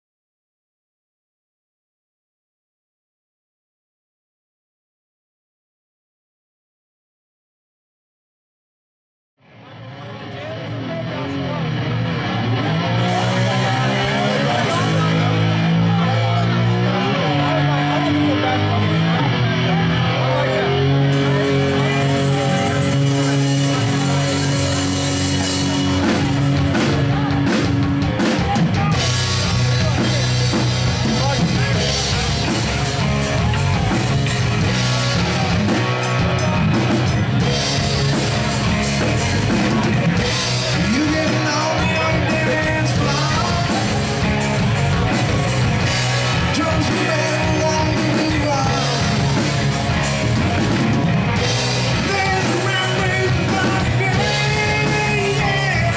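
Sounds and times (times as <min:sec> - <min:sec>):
rock band playing: 0:09.6 - 0:55.9
person singing: 0:12.3 - 0:55.9.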